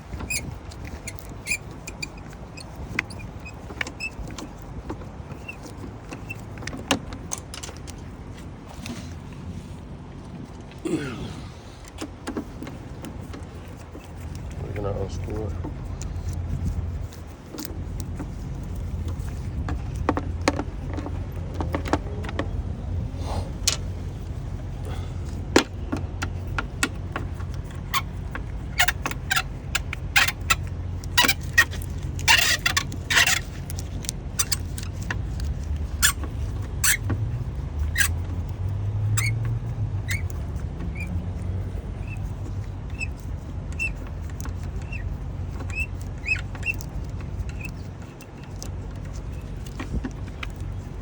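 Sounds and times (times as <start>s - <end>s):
steady low hum: 7.8s - 39.0s.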